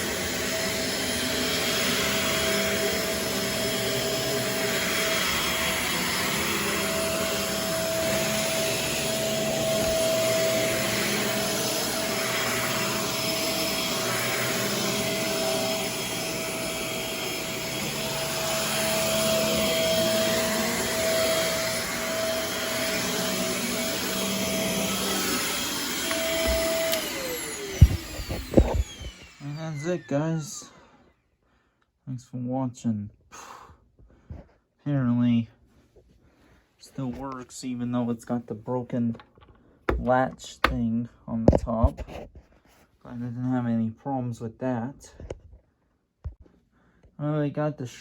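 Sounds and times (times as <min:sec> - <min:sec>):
vacuum cleaner running: 0:00.0 - 0:30.7.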